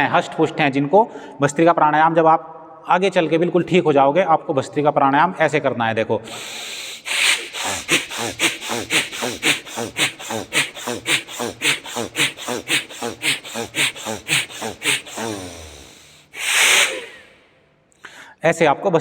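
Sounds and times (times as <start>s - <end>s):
forceful rhythmic nose breathing: 6.3s - 18.2s.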